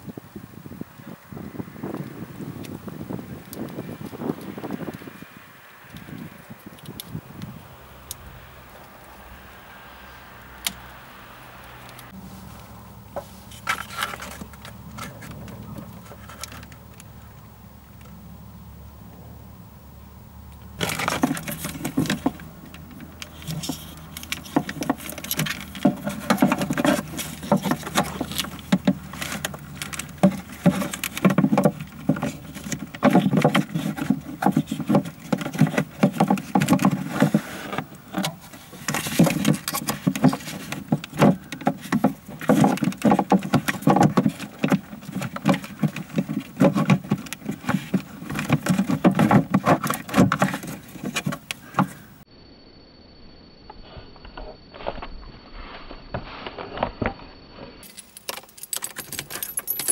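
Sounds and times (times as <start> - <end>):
hands clattering with metal tools: 20.8 - 52.1, 57.8 - 59.9.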